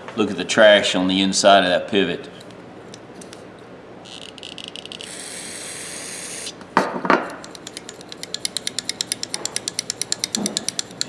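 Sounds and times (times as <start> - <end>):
sharp knocks: 6.8 - 11.0
pliers clicking rapidly: 7.2 - 11.0.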